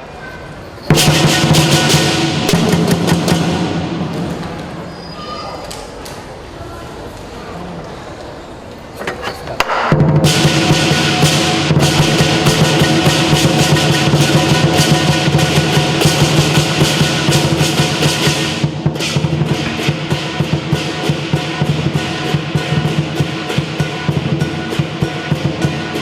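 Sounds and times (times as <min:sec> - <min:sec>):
large drum beaten fast: 0:00.9 - 0:04.9, 0:09.8 - 0:26.0
crashing cymbals: 0:00.9 - 0:05.0, 0:10.2 - 0:26.0
gong: 0:10.2 - 0:26.0.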